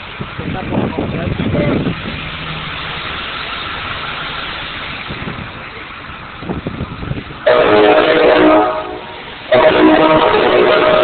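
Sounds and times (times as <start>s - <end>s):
steady background rumble: 0.0s - 11.0s
loud chord horn blasts: 7.4s - 11.0s.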